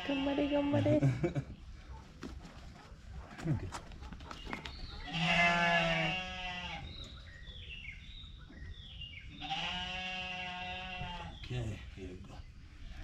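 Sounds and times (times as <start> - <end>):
lamb bleating: 0.0 - 1.0, 5.1 - 6.9, 9.4 - 11.3.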